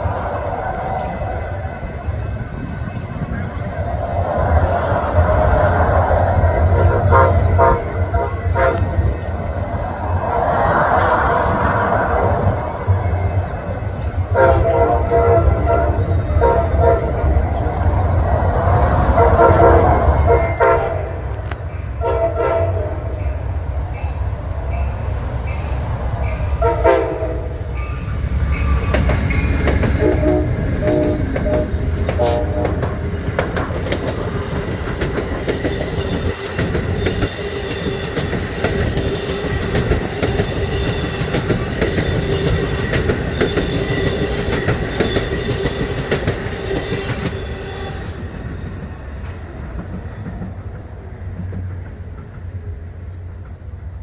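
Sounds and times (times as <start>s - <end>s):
train wheels rumbling on rail: 0.0s - 54.0s
train horn blasts: 6.7s - 9.2s, 14.3s - 17.4s, 19.1s - 23.3s, 26.6s - 33.4s
wheels clacking over rail joints: 25.5s - 48.6s.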